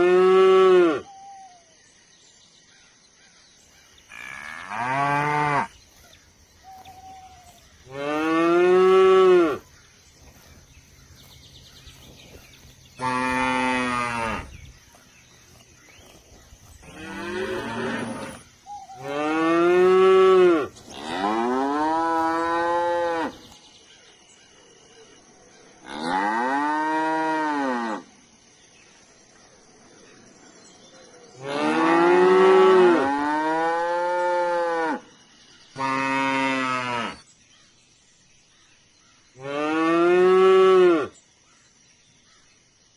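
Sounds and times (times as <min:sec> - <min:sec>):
cattle mooing: 0:13.0 - 0:14.6, 0:16.8 - 0:18.4, 0:19.0 - 0:23.4.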